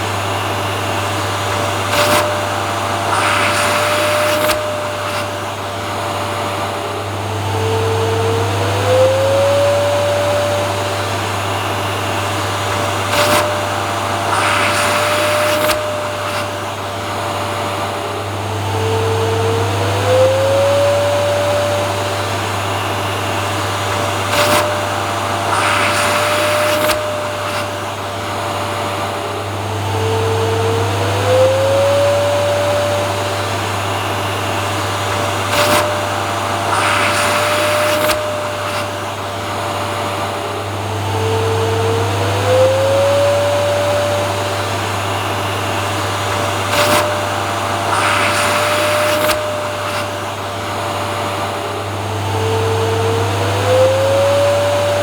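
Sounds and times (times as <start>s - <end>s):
vacuum cleaner humming: 0.0s - 55.0s.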